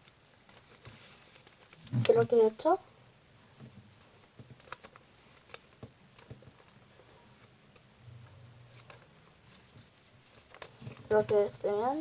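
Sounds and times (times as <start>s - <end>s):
paper being creased: 8.7s - 11.0s.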